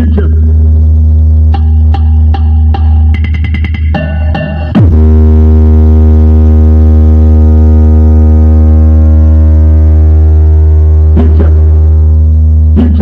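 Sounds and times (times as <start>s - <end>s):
deep bass test tone: 0.0s - 3.4s, 4.6s - 13.0s.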